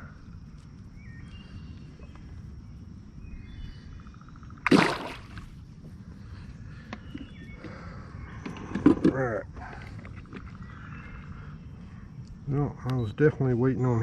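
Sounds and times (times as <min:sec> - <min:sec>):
wind rumbling on microphone: 0:00.0 - 0:14.0
fish splashing into water: 0:04.6 - 0:05.5.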